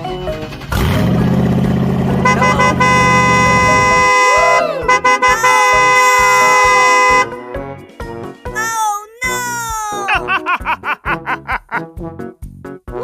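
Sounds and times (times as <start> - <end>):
low engine rumble: 0.0 - 7.3
vehicle horn blaring: 2.1 - 7.6.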